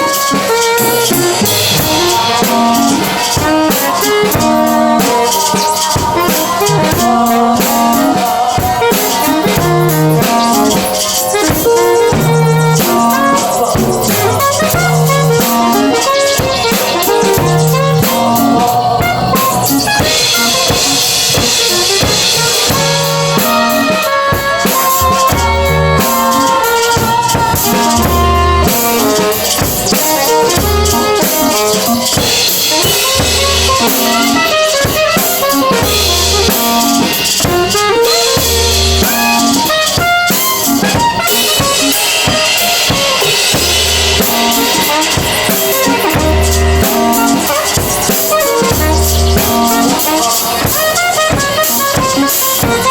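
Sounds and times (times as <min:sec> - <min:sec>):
band playing: 0:00.0 - 0:52.9
drum kit beat: 0:00.0 - 0:52.9
low bass notes: 0:12.0 - 0:23.8, 0:25.0 - 0:26.1.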